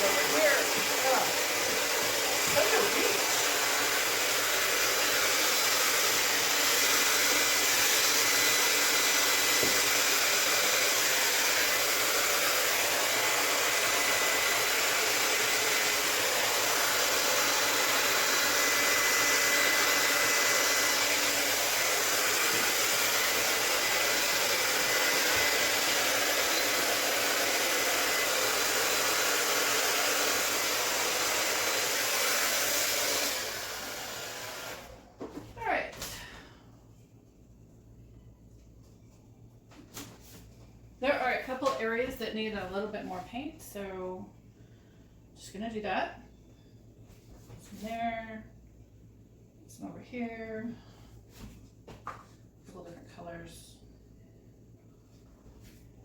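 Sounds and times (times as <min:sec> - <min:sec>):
hair dryer blowing: 0:00.0 - 0:36.4.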